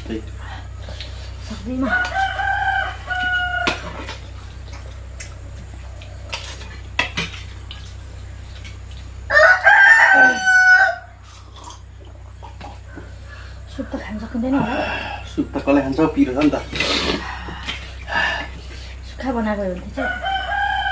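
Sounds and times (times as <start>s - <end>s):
rooster crowing: 1.5s - 4.6s, 9.2s - 11.3s, 12.8s - 15.9s, 19.9s - 20.9s.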